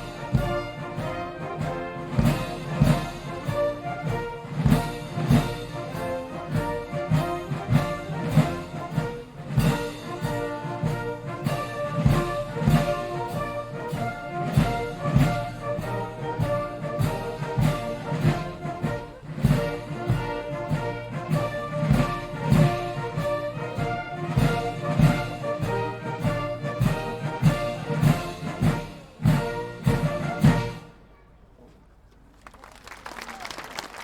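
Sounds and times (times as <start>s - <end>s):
brass-led orchestral march: 0.0s - 31.6s.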